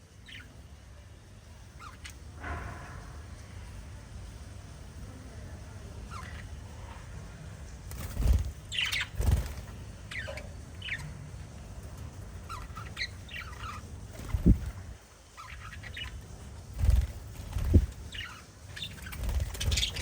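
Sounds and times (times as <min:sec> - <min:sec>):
parrots chirping: 0:01.6 - 0:03.4, 0:06.0 - 0:06.8, 0:08.1 - 0:20.0.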